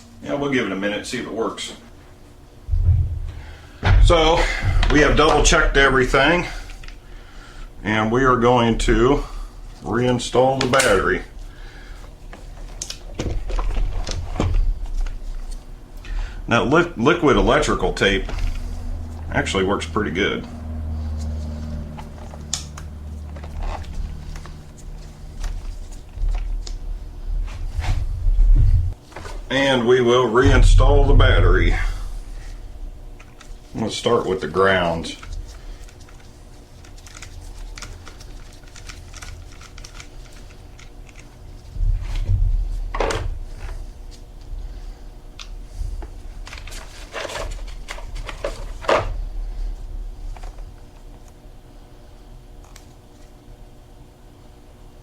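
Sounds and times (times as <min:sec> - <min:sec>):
steady low hum: 0:00.0 - 0:55.0
low thumps: 0:02.6 - 0:06.2, 0:30.4 - 0:32.0
parts clicking and knocking: 0:35.1 - 0:41.4.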